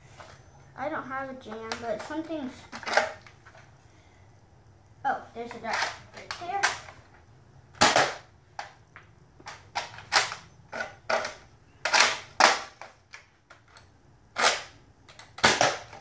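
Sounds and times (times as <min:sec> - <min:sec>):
toy blaster clacks and pops: 0:07.8 - 0:08.7, 0:09.5 - 0:13.3, 0:14.4 - 0:16.0.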